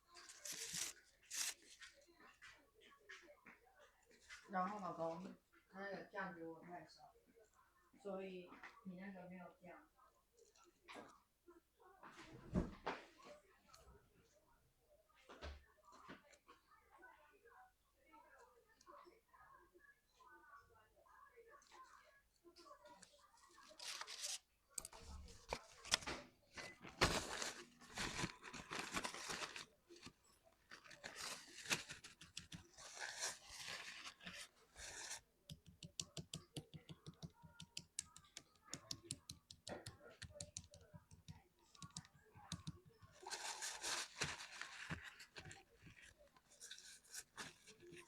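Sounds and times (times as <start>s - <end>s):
scraping and rustling: 42.5s - 48.0s.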